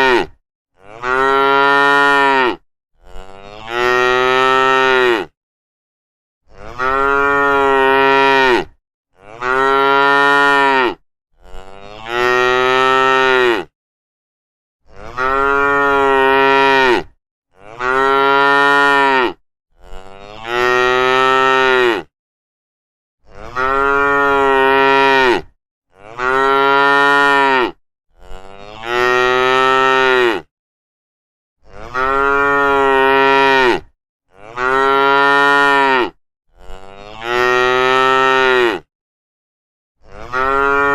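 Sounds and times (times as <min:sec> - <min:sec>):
cattle mooing: 0:00.0 - 0:05.3, 0:06.5 - 0:13.7, 0:14.9 - 0:22.1, 0:23.4 - 0:30.5, 0:31.7 - 0:38.9, 0:40.1 - 0:40.9.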